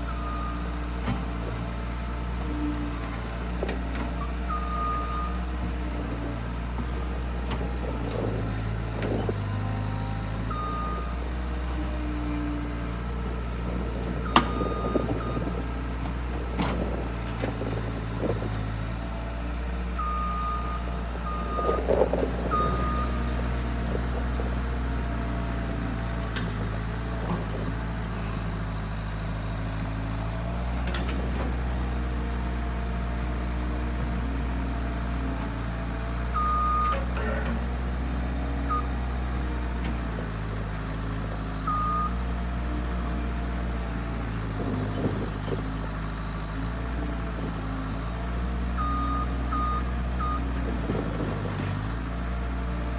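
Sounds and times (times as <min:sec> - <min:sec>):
skid loader engine running: 0:00.0 - 0:52.9
reversing alarm beeps: 0:10.4 - 0:11.2, 0:14.0 - 0:15.6, 0:20.0 - 0:23.4, 0:36.4 - 0:37.1, 0:41.7 - 0:42.2, 0:48.8 - 0:50.5.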